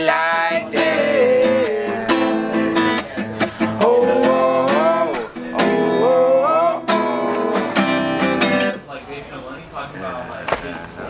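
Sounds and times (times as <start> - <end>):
wordless sung vocal: 0.0 - 8.0
strummed acoustic guitar: 0.0 - 8.8.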